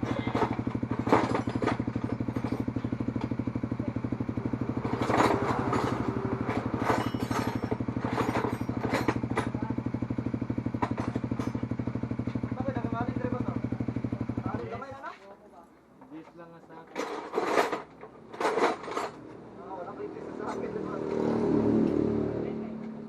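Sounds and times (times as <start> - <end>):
motorcycle engine idling: 0.0 - 15.1.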